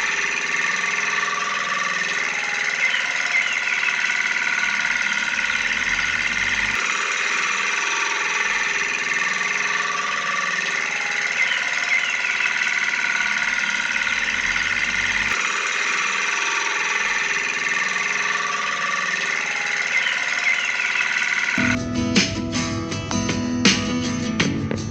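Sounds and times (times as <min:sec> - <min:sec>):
small electric motor whirring: 0:00.0 - 0:21.8.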